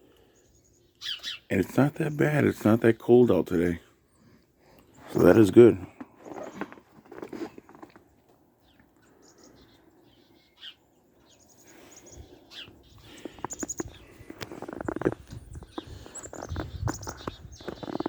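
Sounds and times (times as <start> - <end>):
small birds chirping: 0.0 - 7.2, 7.8 - 18.0
crunching scuffs and clicks: 5.9 - 8.4, 13.1 - 18.0.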